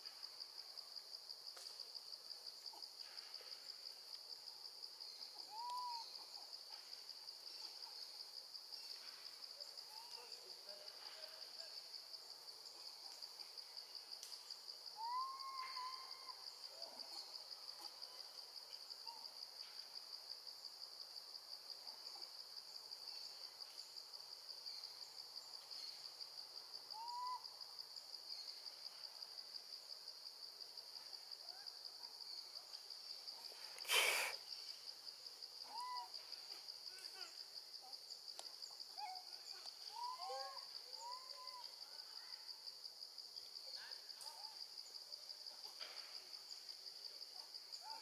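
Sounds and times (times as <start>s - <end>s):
pulsing insect chorus: 0.0s - 48.0s
baby monkey coo calls: 5.4s - 6.2s, 15.0s - 16.4s, 27.0s - 27.4s, 35.6s - 36.2s, 39.0s - 41.6s.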